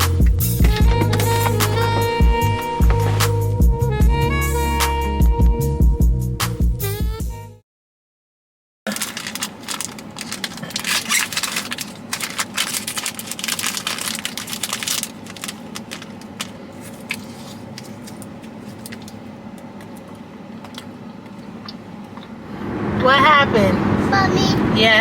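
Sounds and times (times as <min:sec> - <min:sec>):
rustling and clicking of handling: 0:08.9 - 0:21.5
low hum of car interior: 0:09.0 - 0:25.0.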